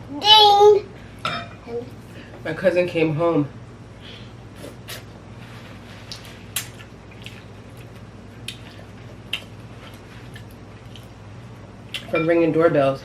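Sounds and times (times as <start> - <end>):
low steady hum: 0.0 - 13.0
wet chewing and mouth smacks: 6.1 - 11.2.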